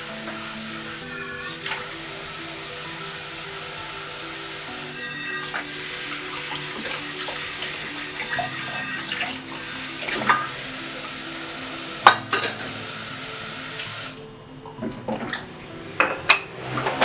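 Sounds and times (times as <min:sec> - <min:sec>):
pans and utensils clinking: 0:00.0 - 0:14.1, 0:14.7 - 0:17.0
tap water running into sink: 0:00.0 - 0:14.2.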